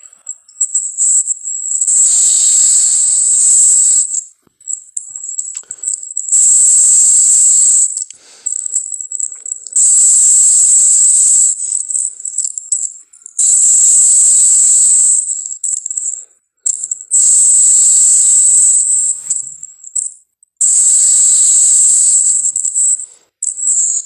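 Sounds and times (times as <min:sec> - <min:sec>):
creature hissing rattles: 0:01.8 - 0:04.0
quiet scrappy creature sounds: 0:01.9 - 0:03.8.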